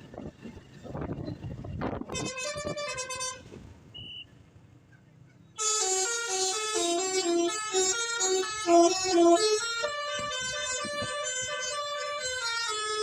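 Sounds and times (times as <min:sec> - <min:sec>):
road noise: 0:00.0 - 0:13.0
bus air horn melody: 0:02.0 - 0:03.5, 0:05.6 - 0:13.0.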